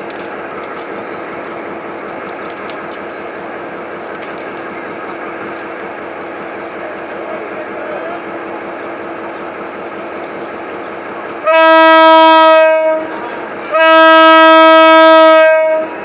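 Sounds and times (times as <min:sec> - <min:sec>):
locomotive engine running: 0:00.0 - 0:16.0
locomotive air horn blasts: 0:11.4 - 0:16.0.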